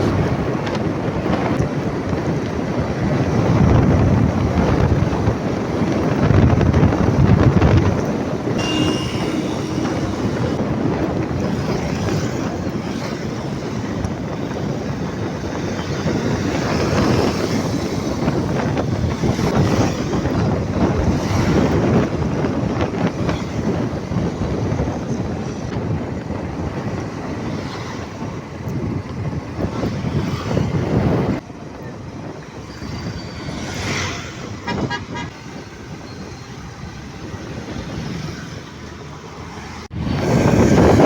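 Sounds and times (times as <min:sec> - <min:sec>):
vehicle road noise: 0:00.0 - 0:41.0
wind buffeting microphone: 0:00.0 - 0:41.0
faint brief tone: 0:08.6 - 0:10.5.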